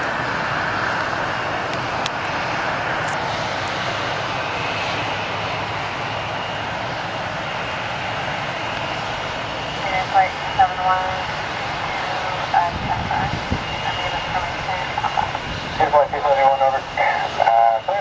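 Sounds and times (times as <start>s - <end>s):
jet engines at taxi power: 0.0s - 18.0s.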